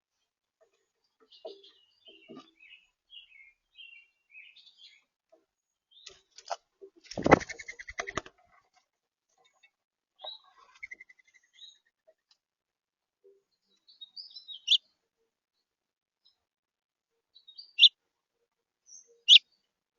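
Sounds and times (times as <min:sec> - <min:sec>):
songbirds chirping: 0:00.0 - 0:19.9
rapid wing flapping: 0:07.0 - 0:08.3
bird trill: 0:13.8 - 0:14.9, 0:17.4 - 0:18.0, 0:18.9 - 0:19.5.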